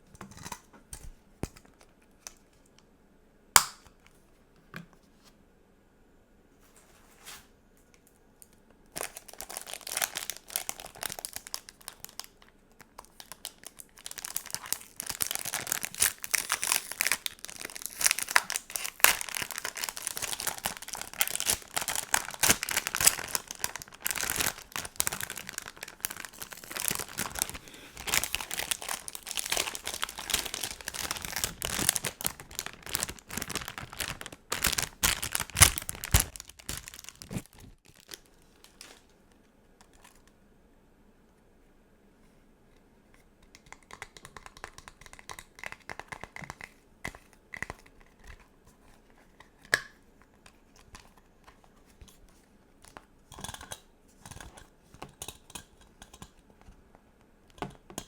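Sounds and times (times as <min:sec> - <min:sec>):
plastic packaging crinkling: 0:09.0 - 0:39.2.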